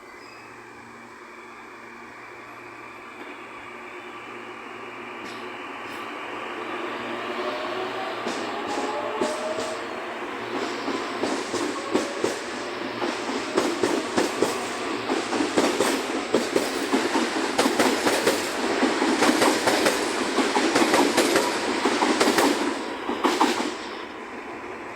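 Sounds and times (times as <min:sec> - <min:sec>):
train wheels clacking over rail joints: 0:08.2 - 0:23.8.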